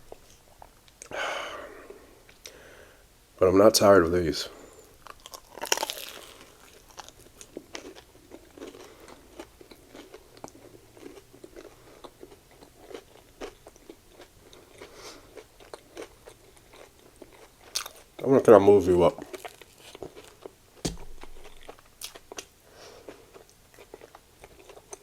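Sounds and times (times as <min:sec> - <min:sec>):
chewing with crunches: 0:04.6 - 0:25.0.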